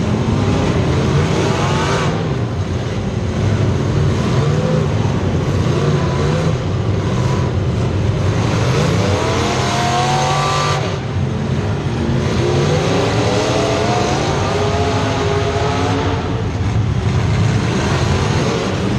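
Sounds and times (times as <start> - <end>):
race car engines revving: 0.0 - 18.9.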